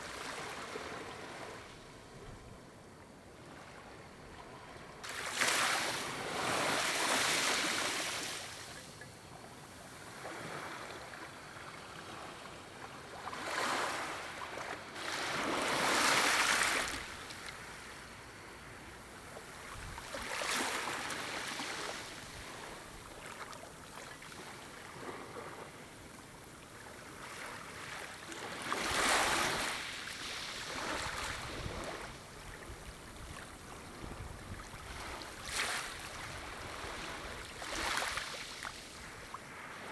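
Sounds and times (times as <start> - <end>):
small waves lapping on shore: 4.9 - 39.9.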